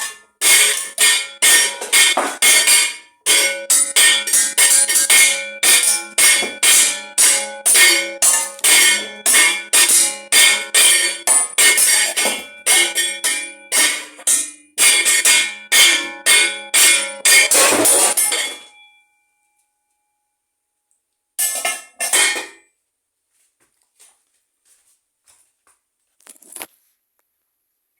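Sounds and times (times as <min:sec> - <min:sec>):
bells ringing: 0:00.6 - 0:19.1.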